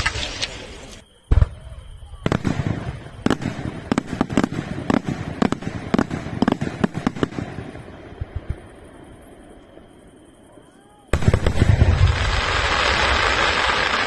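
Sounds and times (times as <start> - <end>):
fireworks bangs: 0.0 - 9.4, 11.1 - 14.0
fireworks rumble: 0.0 - 14.0.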